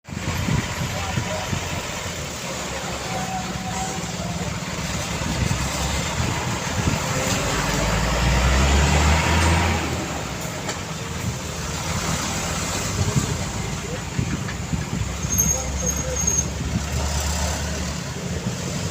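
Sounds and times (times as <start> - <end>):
heavy vehicle engine rumble: 0.0 - 18.9
road traffic passing: 0.0 - 18.9.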